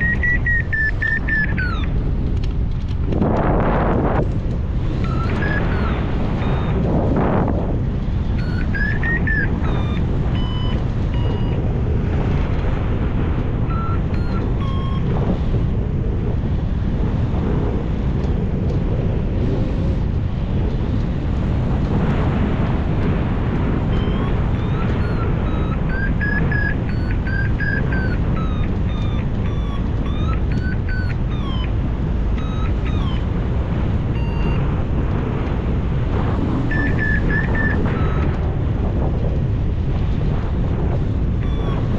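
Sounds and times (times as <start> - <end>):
variometer electronic beeps: 0.0 - 2.1, 4.0 - 15.7, 22.9 - 40.2, 41.0 - 41.9
wind rushing over microphone: 0.0 - 41.9.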